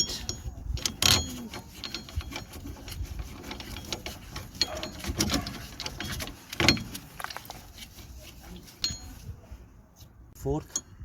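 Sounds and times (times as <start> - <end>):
bolt clicking and rattling: 0.0 - 7.6.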